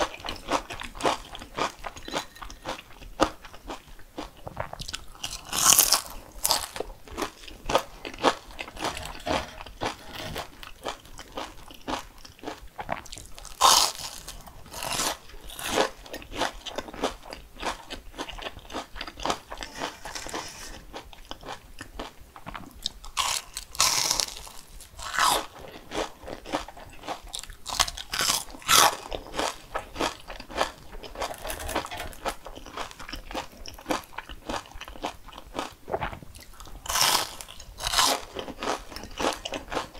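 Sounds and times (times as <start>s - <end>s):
crunchy chewing: 0.0s - 39.9s
loud crunching bites: 4.2s - 21.6s, 23.1s - 35.7s, 36.8s - 39.9s.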